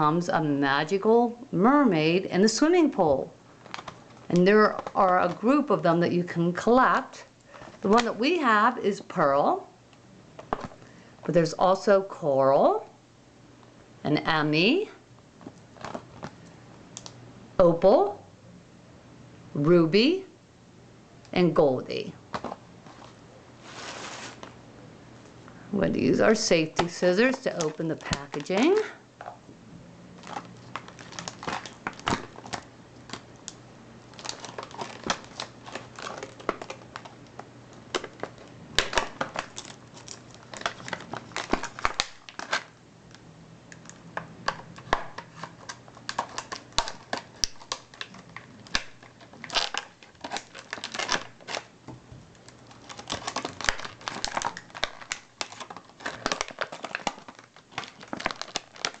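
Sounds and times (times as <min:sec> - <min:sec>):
packaging crinkling: 0:03.6 - 0:05.7, 0:15.4 - 0:17.2, 0:22.3 - 0:24.6, 0:26.4 - 0:29.0, 0:30.1 - 0:42.8, 0:43.7 - 0:59.0.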